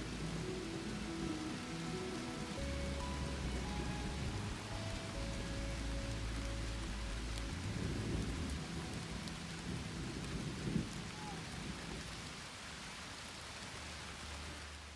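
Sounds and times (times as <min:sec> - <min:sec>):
low rumble: 0:00.0 - 0:11.1
steady rain falling: 0:00.0 - 0:14.9.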